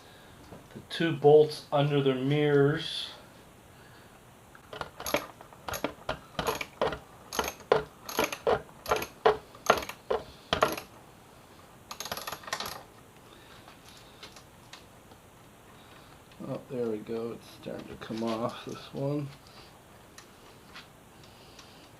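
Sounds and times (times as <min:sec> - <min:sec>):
ratchet wrench clicking: 0:07.3 - 0:10.0.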